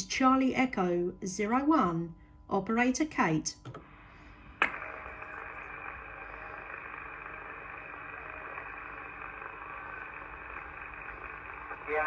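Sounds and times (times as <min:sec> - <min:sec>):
faint steady tones: 0:00.0 - 0:12.0
radio static hiss: 0:04.6 - 0:12.0.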